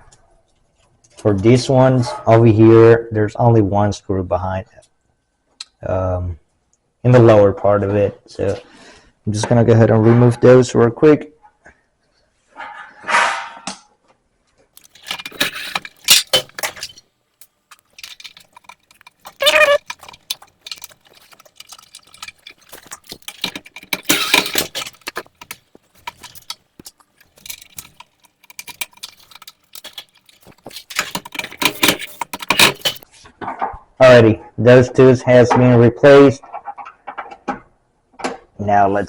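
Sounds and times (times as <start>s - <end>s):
metal parts clicking and clinking: 14.8s - 33.0s.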